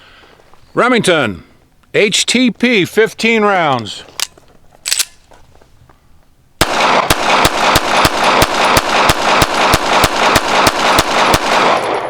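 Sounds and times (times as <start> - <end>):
pistol rapid fire: 6.6 - 12.0.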